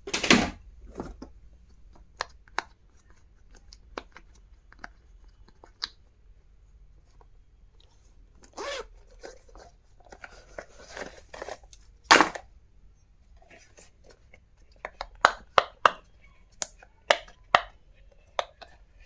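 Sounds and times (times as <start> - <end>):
packaging rustling and scraping: 8.4 - 12.3.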